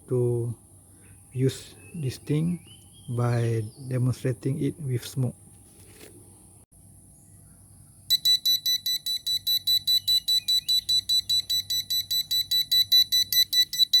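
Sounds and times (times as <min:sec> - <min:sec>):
smoke detector alarm beeping: 0:08.1 - 0:14.0.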